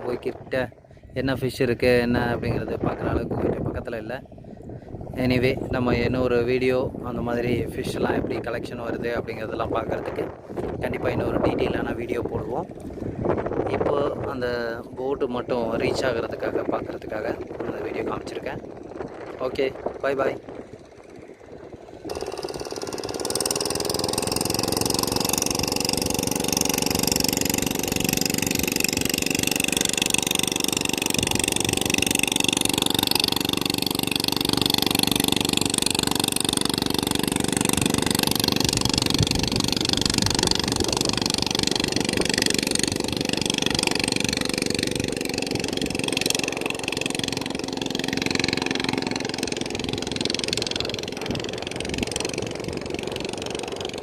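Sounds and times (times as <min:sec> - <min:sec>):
engine running: 0:15.2 - 0:54.0.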